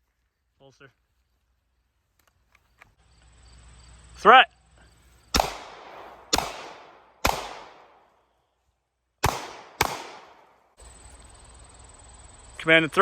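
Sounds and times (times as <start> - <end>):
pistol shots with echo: 5.3 - 8.2, 9.2 - 10.8.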